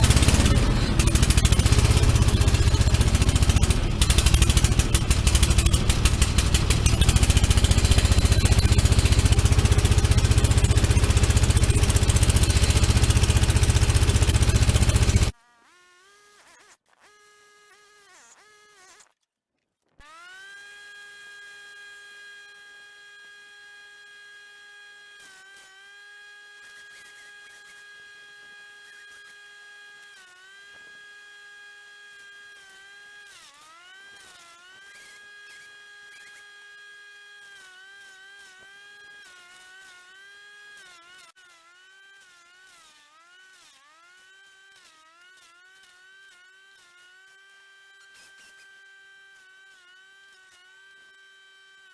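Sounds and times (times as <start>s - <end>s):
wood chipper whining: 0.0s - 15.3s.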